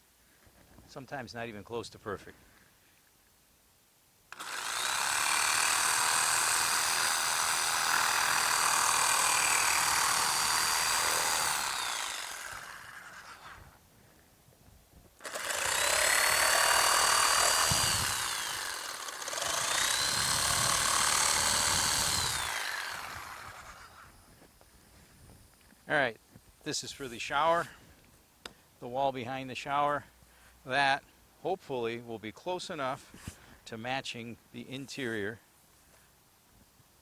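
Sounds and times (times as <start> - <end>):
electric power saw cutting: 4.3 - 13.8, 15.2 - 24.3.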